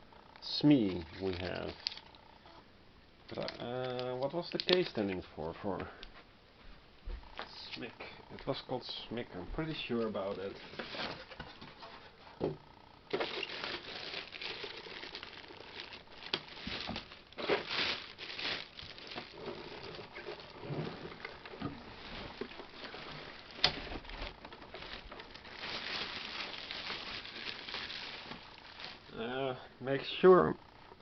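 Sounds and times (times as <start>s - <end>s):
plastic packaging crinkling: 0.7s - 2.2s, 3.3s - 5.1s, 13.1s - 29.2s.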